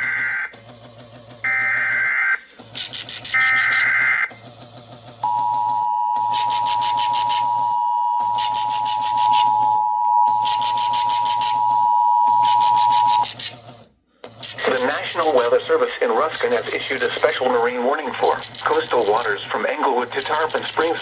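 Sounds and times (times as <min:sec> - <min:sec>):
printer rasping: 0:00.0 - 0:21.0
two-tone attention signal: 0:01.4 - 0:02.4, 0:03.3 - 0:04.4, 0:05.2 - 0:13.4
warbling data burst: 0:05.2 - 0:13.4, 0:14.5 - 0:21.0.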